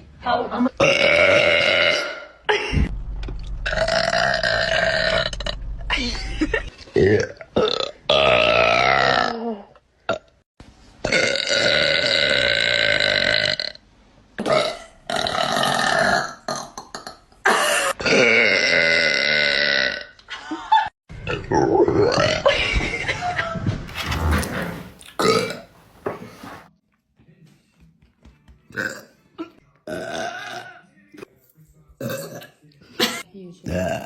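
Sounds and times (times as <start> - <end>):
women burping: 0.8 - 2.7, 24.1 - 26.3.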